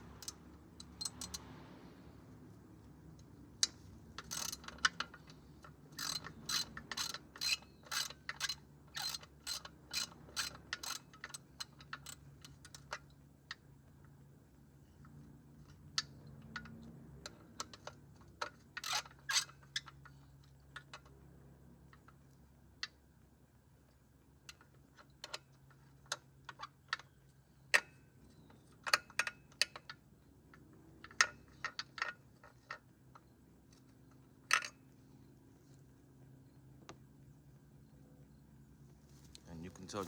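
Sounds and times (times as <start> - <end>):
wrench clicking and clinking: 4.2 - 5.2, 5.9 - 12.8.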